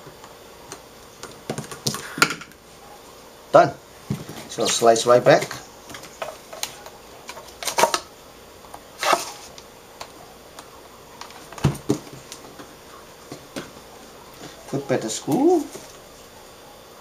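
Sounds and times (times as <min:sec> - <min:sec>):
plastic strip scraping and clicking: 0:09.0 - 0:09.6.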